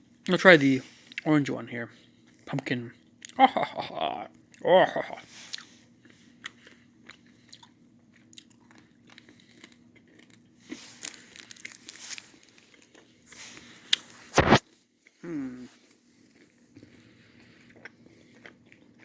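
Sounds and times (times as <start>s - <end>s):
chewing gum: 2.0s - 19.0s
candy shell crunching: 6.5s - 14.6s.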